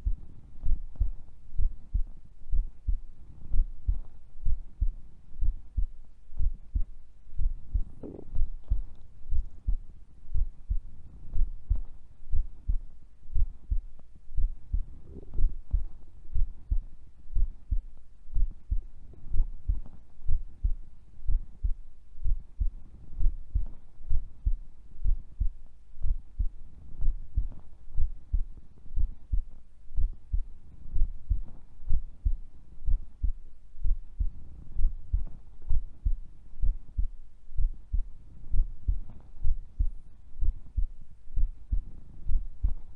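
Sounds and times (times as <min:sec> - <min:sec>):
heartbeat through chest: 0:00.0 - 0:42.9
stomach gurgles: 0:07.9 - 0:09.0.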